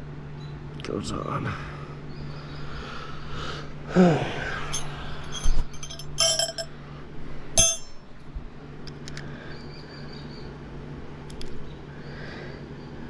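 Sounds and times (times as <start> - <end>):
steady low hum: 0.0 - 13.0
metallic clinks of hand tools: 4.7 - 6.7, 7.6 - 8.0.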